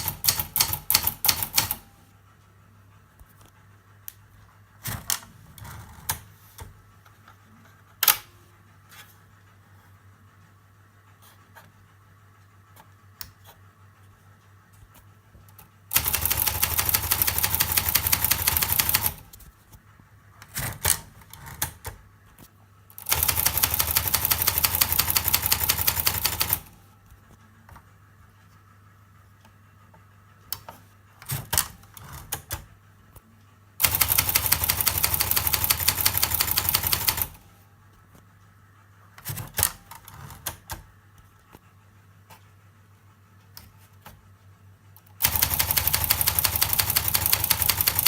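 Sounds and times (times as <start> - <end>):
typewriter clicking: 0.0 - 1.9, 15.9 - 19.4, 20.5 - 22.0, 23.0 - 26.8, 31.2 - 32.6, 33.8 - 37.4, 45.2 - 48.0.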